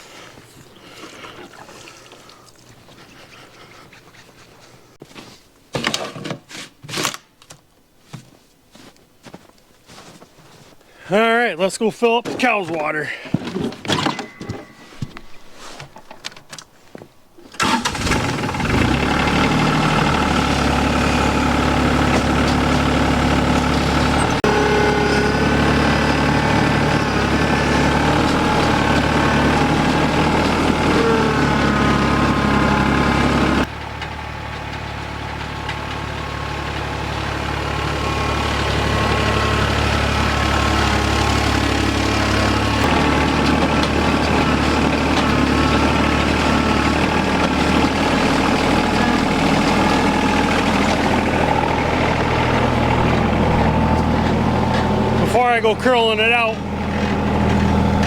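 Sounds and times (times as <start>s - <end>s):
tractor engine running: 17.4s - 58.0s.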